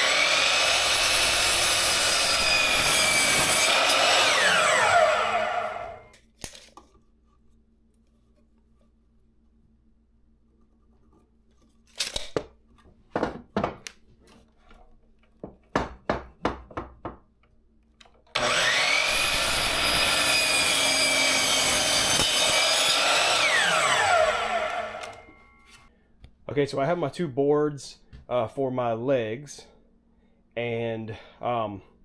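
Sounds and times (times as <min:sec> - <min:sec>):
power saw cutting wood: 0:00.0 - 0:06.1, 0:18.4 - 0:25.6.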